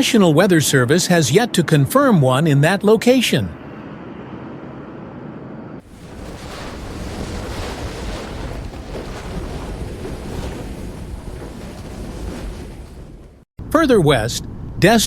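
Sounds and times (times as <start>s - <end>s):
strong wind buffeting microphone: 5.8s - 13.5s.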